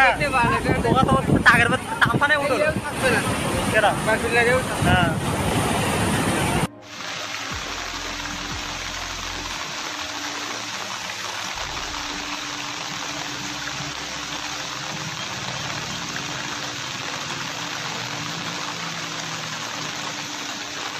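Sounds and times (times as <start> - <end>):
water rushing: 0.0 - 20.9.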